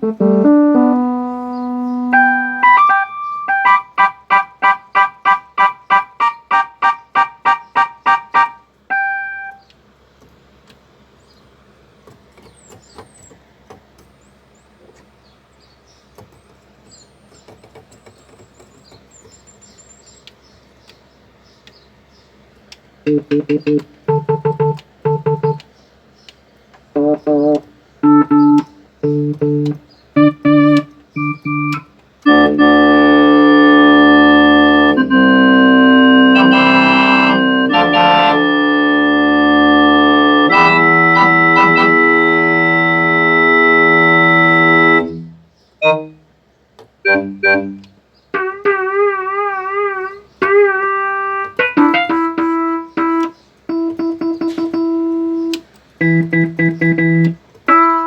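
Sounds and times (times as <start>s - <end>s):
synthesizer chords and notes: 0.0s - 9.6s, 27.0s - 46.4s, 47.1s - 54.9s.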